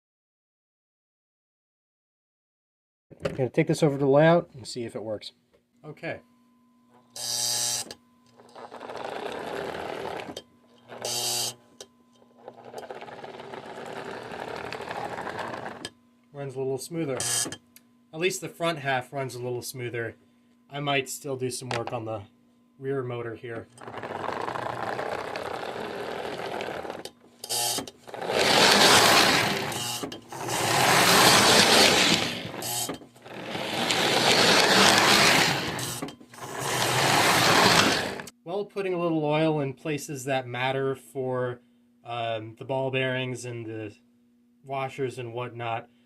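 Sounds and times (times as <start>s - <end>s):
toy train motor whirring: 7.2s - 11.6s, 12.4s - 15.9s, 23.8s - 38.3s.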